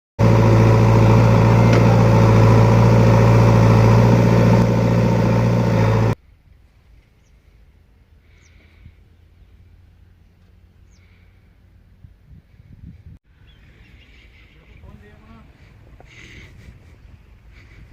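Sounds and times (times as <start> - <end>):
diesel engine running: 0.2 - 6.2.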